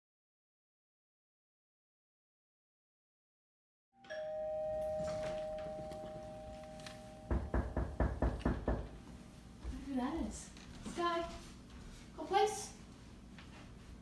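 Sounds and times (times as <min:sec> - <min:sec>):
electronic doorbell two-pitch tone: 0:04.1 - 0:08.0.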